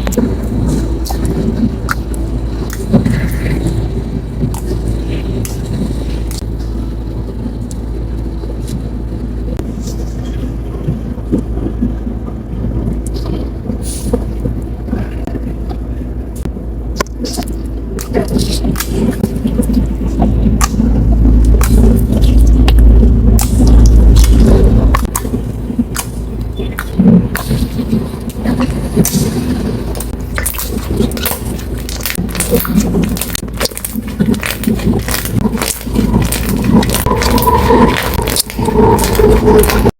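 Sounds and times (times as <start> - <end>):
slime clicking and crackling: 0.0 - 6.5, 17.0 - 39.9
low hum: 0.0 - 39.9
steady low rumble: 0.0 - 39.9.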